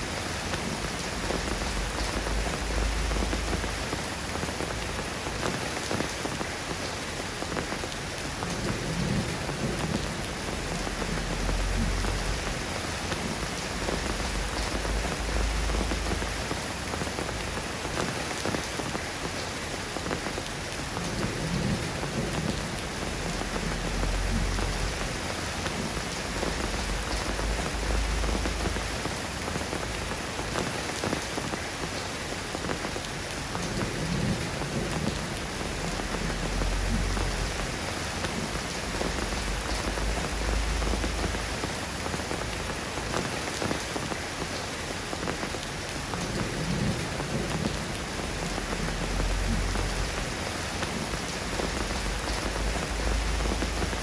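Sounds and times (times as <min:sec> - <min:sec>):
rain falling: 0:00.0 - 0:54.0
low rumbles: 0:09.0 - 0:17.6, 0:22.4 - 0:29.3, 0:34.7 - 0:43.0, 0:46.6 - 0:54.0.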